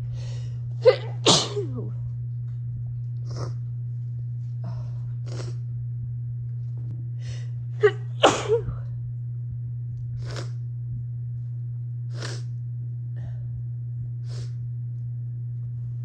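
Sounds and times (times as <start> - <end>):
steady low hum: 0.0 - 16.0
woman sneezing: 0.8 - 1.9, 7.8 - 8.7.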